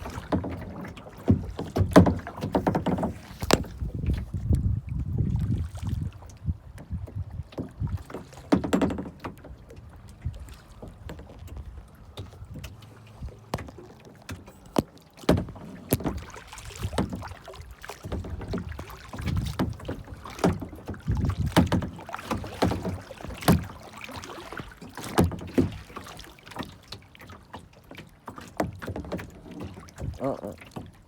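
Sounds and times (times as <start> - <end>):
paddle splashing water: 0.0 - 31.0
sharp knocks: 0.1 - 3.9, 8.5 - 9.4.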